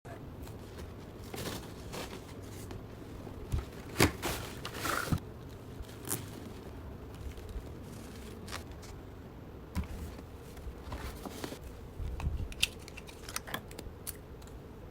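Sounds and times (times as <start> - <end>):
packaging rustling: 0.4 - 9.0, 9.8 - 11.8.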